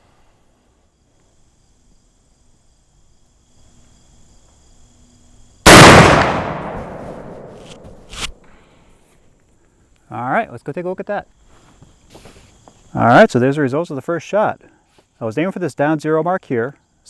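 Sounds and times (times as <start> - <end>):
pistol shot: 5.7 - 8.2.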